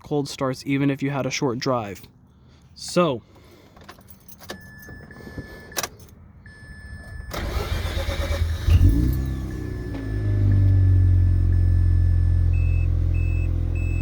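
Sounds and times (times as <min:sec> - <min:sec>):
starter motor cranking: 0:07.3 - 0:09.1
rotary engine revving and idling: 0:07.4 - 0:14.0.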